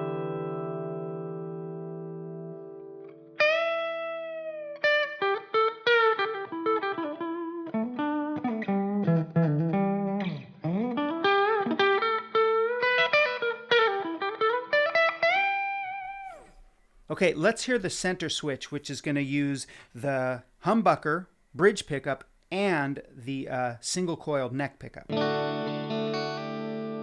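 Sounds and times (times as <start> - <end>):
clean electric guitar melody: 0.0 - 16.7, 25.1 - 27.0.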